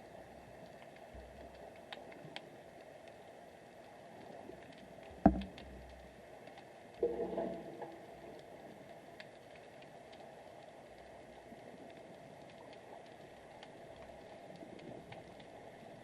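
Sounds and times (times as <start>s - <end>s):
faint clicks: 0.5s - 7.1s, 8.3s - 16.0s
sharp knock: 5.3s - 5.5s.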